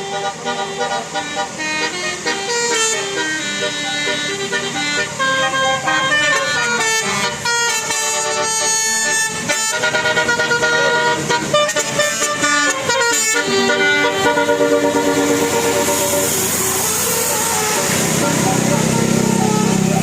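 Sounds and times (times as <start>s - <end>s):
multi-tone musical bus horn: 0.0s - 20.0s.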